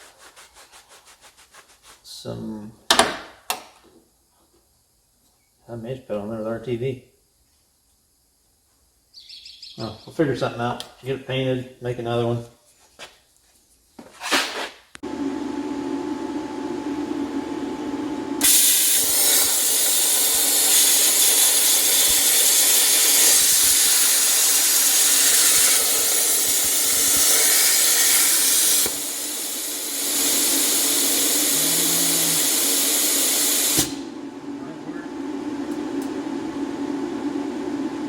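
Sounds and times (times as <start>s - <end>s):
compressed gas jet hissing: 18.4s - 34.2s.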